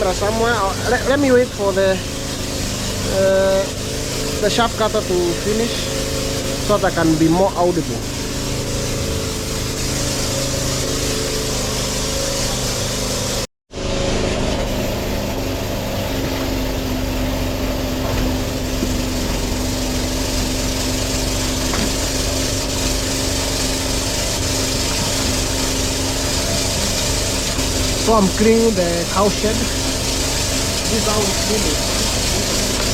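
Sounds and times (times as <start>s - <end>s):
chaff cutter engine drone: 0.0s - 32.9s.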